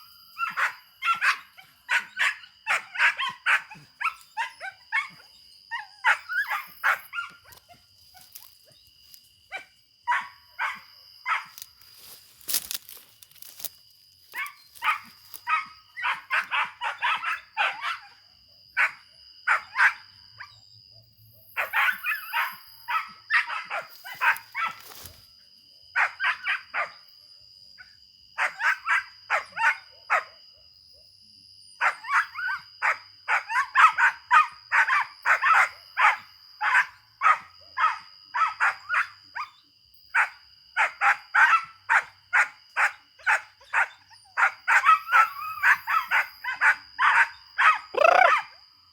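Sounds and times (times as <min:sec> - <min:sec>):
dog barking: 0:00.4 - 0:07.6, 0:09.5 - 0:11.6, 0:14.4 - 0:18.2, 0:18.8 - 0:20.0, 0:21.6 - 0:24.8, 0:26.0 - 0:26.9, 0:28.4 - 0:30.4, 0:31.8 - 0:39.5, 0:40.2 - 0:48.5.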